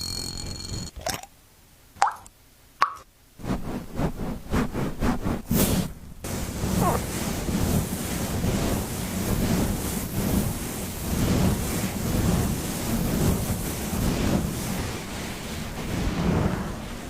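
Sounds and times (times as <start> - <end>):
rushing rumbling noise: 3.4 - 17.0.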